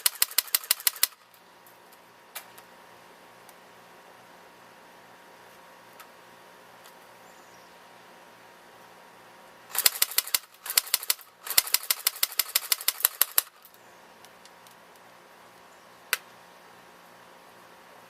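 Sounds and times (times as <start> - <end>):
airsoft gun bursts of clicks: 0.0 - 1.2, 9.7 - 13.8.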